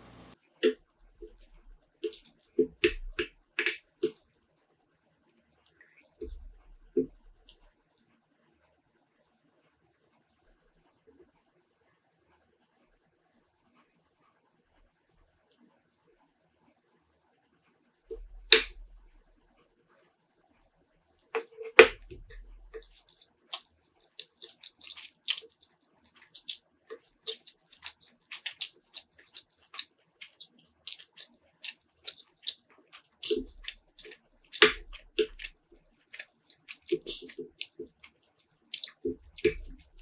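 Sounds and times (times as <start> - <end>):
chewing and mouth sounds: 0.6 - 4.5, 5.4 - 7.8, 18.1 - 19.2, 20.6 - 40.0.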